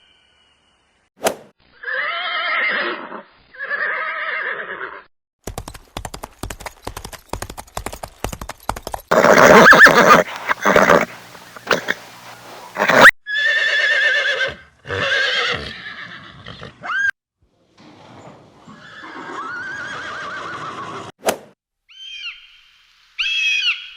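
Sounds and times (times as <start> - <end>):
horse whinny: 1.8 - 5.1, 9.1 - 12.0, 12.7 - 17.2, 18.6 - 21.1
horse hoofbeats clip-clopping: 5.4 - 12.1
drawn-out animal calls: 9.1 - 17.1.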